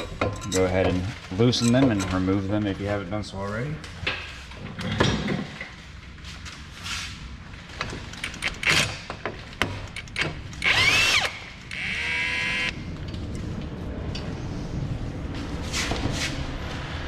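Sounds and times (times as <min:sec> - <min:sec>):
tools and metal parts clanking: 0:00.0 - 0:02.8, 0:04.0 - 0:05.8, 0:07.6 - 0:10.7
cordless power tool spinning: 0:10.6 - 0:12.7.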